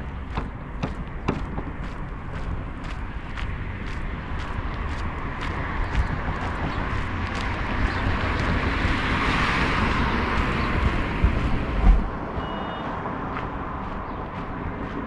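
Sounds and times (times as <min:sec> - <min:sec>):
road and wind noise: 0:00.0 - 0:15.0
wind buffeting microphone: 0:00.0 - 0:15.0
short high beep: 0:12.4 - 0:12.9.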